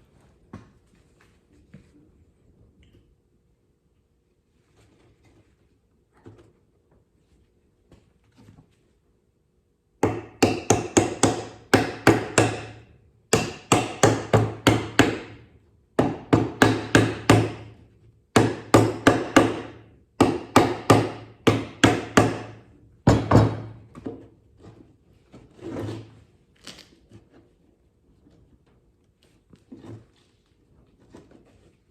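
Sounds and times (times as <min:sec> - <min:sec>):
hammer driving nails into wood: 0:10.0 - 0:15.4, 0:16.0 - 0:17.7, 0:18.4 - 0:23.8.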